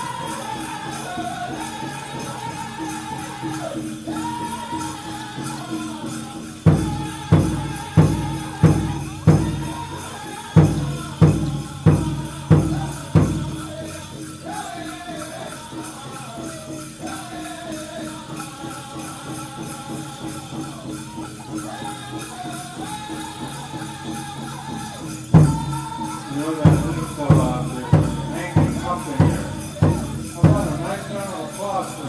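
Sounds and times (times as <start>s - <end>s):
drum group singing: 0.0s - 32.0s
loud accented drum beats: 0.0s - 32.0s.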